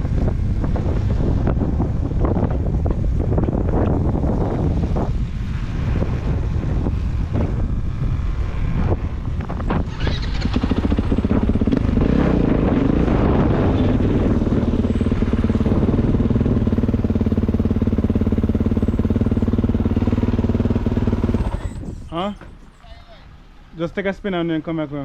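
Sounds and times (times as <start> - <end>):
dirt bike engine running: 0.0 - 22.0.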